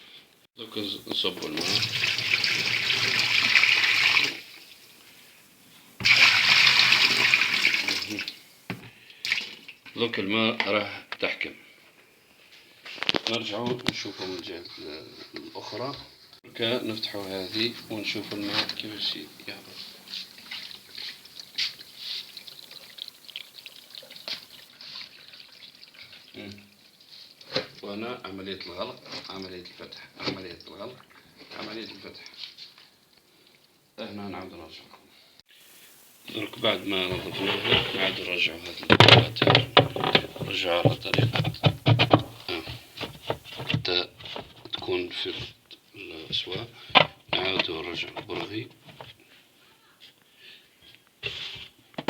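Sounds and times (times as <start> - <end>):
water pouring and splashing: 0.7 - 10.0, 16.5 - 33.8, 35.5 - 45.3.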